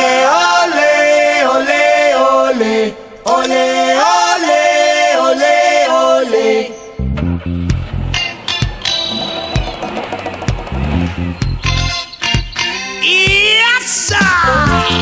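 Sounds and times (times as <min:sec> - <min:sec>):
group chanting sung phrases: 0:00.0 - 0:06.9
band music with guitar: 0:07.0 - 0:15.0.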